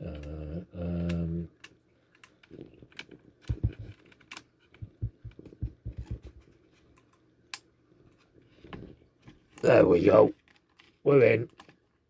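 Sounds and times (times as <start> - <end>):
hard drive parts clicking and knocking: 1.1 - 6.5.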